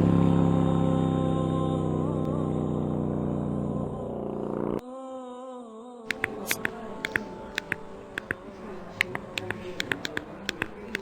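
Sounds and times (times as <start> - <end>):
low rumbling drone: 0.0 - 4.8
sharp clicks: 6.1 - 11.0.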